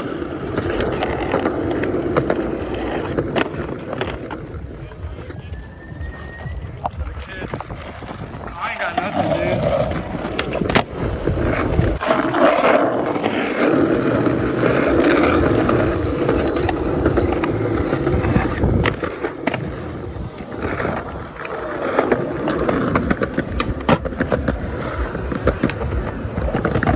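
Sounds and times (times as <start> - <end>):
skateboard clacks: 0.0 - 26.9
skateboard wheels rumbling: 0.0 - 26.9.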